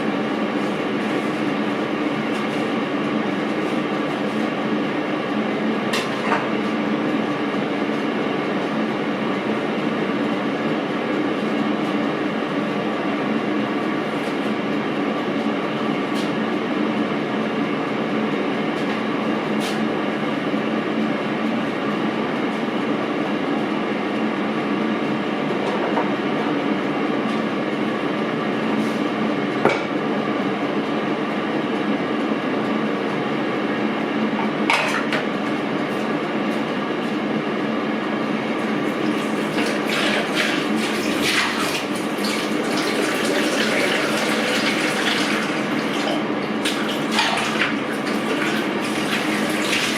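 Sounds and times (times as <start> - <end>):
water splashing and clattering: 38.9 - 49.9.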